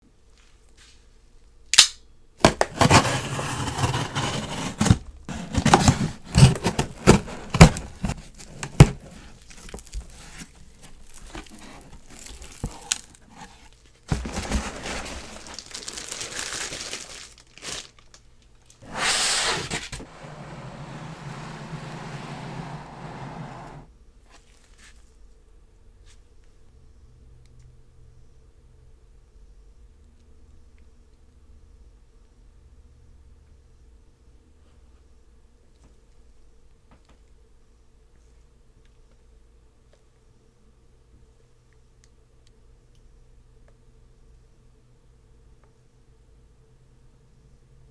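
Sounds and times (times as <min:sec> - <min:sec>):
sharp snaps and clicks: 0:01.7 - 0:02.1
wrapping tearing and crinkling: 0:01.8 - 0:20.1.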